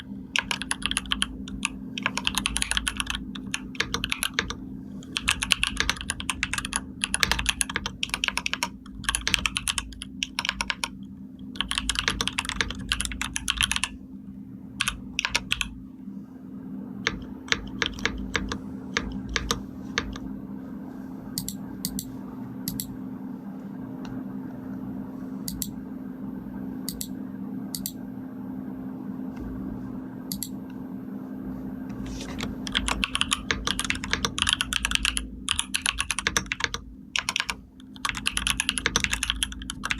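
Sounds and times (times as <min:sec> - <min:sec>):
steady low hum: 0:00.0 - 0:39.9
typing on computer keyboard: 0:00.4 - 0:11.0, 0:11.6 - 0:13.9, 0:14.8 - 0:15.7, 0:17.0 - 0:20.2, 0:32.4 - 0:39.9.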